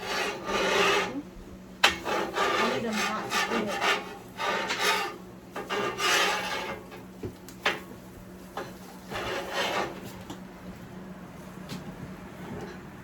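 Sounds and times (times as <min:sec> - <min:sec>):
spatula scraping griddle: 0:00.0 - 0:01.2, 0:01.8 - 0:07.1, 0:07.7 - 0:10.2.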